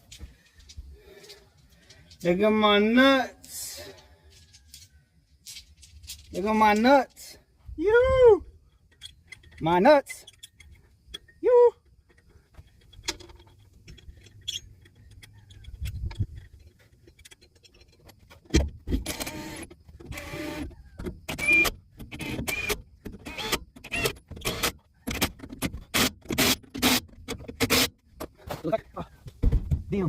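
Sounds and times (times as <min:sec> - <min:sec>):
impact wrench bursts: 0:25.9 - 0:27.9.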